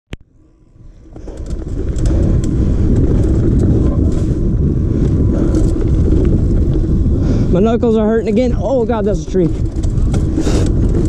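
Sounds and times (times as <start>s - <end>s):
wind over microphone: 0.2s - 11.0s
mountain bike rattling: 0.3s - 11.0s
bike clicks and knocks: 0.9s - 7.1s, 9.3s - 11.0s.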